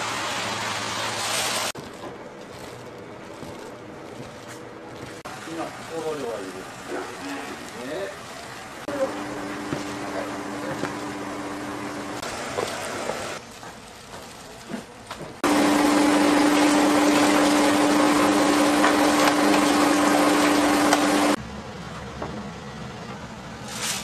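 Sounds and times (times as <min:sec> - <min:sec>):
machine motor humming: 0:08.9 - 0:13.4, 0:15.4 - 0:21.4.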